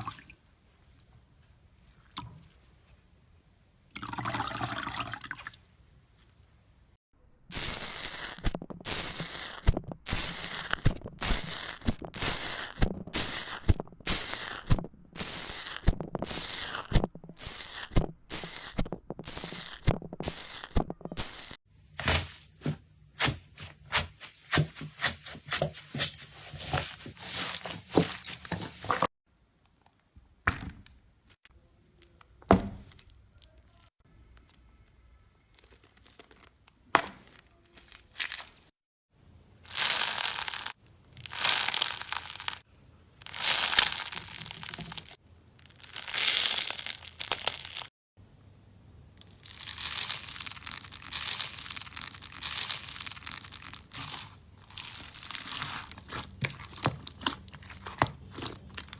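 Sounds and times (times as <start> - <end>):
slime crackling and popping: 7.5 - 22.4, 23.2 - 29.0, 39.7 - 42.6, 43.2 - 47.9, 49.2 - 58.9
slime squished by hand: 7.5 - 29.1, 39.7 - 42.6, 43.2 - 47.9, 49.2 - 58.9.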